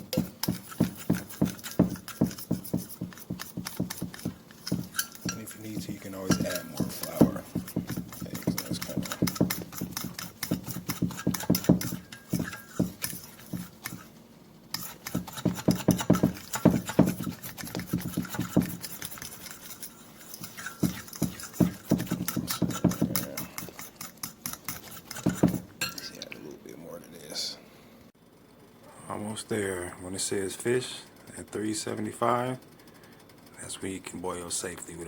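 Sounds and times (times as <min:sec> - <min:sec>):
utensil tapping against bowl: 0:00.0 - 0:14.1, 0:14.7 - 0:26.0
batter stirred in a bowl: 0:00.0 - 0:26.3.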